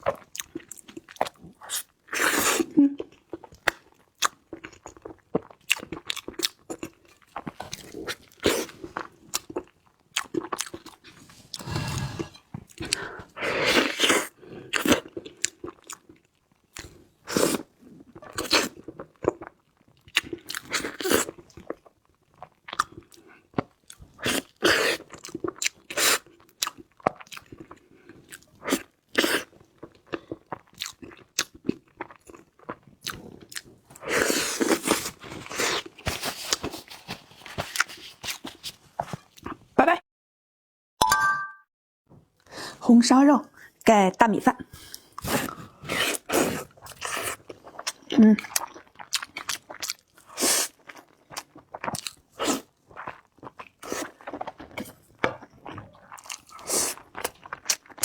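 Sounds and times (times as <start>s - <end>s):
crunchy chewing and biting: 45.0s - 58.0s.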